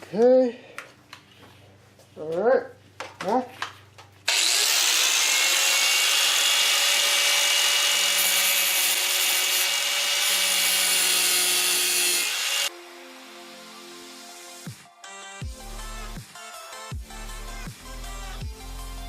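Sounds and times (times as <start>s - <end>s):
drill grinding through steel: 4.3s - 14.7s.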